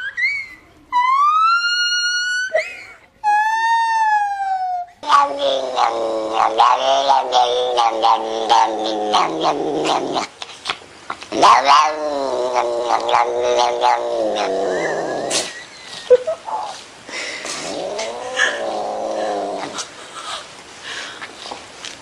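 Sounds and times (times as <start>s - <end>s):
pet yowling: 0.0s - 2.7s, 3.3s - 10.3s, 11.4s - 15.6s, 17.8s - 19.9s.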